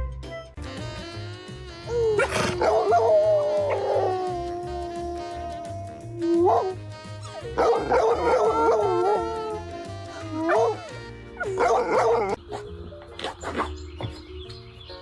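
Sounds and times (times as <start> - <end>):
dog howling and whining: 1.9 - 12.4.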